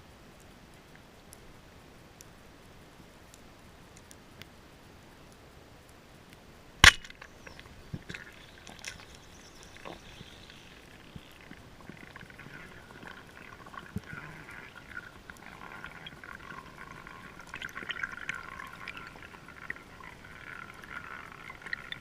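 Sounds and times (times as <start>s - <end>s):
small clicks: 6.3s - 22.0s
speargun firing underwater: 6.8s - 7.6s
faint underwater ticking: 6.8s - 22.0s.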